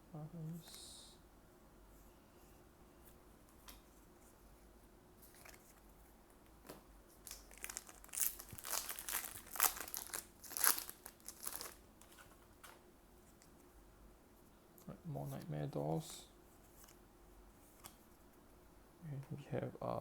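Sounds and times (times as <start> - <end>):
foil wrapper crinkling: 7.2 - 12.2.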